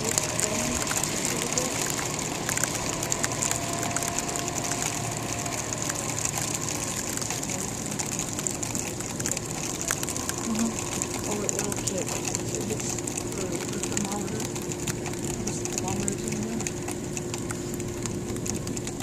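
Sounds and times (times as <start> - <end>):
freezing rain hissing and ticking: 0.0 - 19.0.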